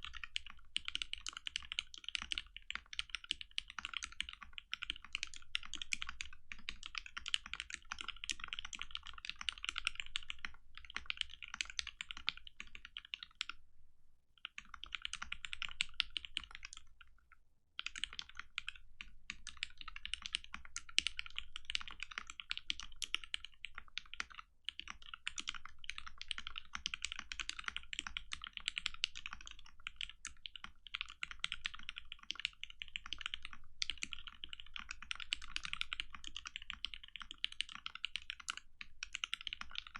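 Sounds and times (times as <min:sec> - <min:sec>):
mechanical keyboard typing: 0:00.0 - 0:13.5, 0:14.4 - 0:17.1, 0:17.8 - 0:39.9.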